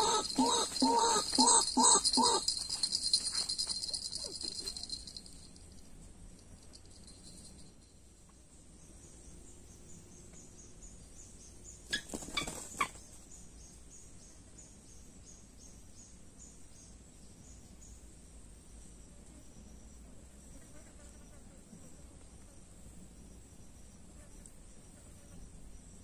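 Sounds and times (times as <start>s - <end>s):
insect chirping: 0.0s - 21.4s, 22.6s - 26.0s.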